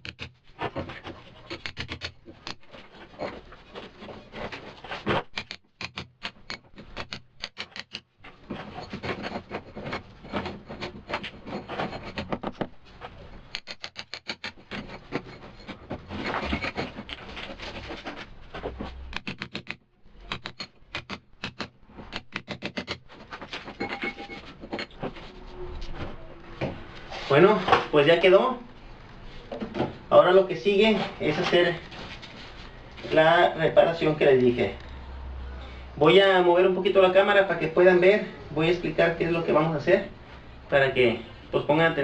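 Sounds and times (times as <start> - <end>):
mallet striking chisel on masonry: 5.1 - 8.1, 13.5 - 17.2, 19.1 - 23.0.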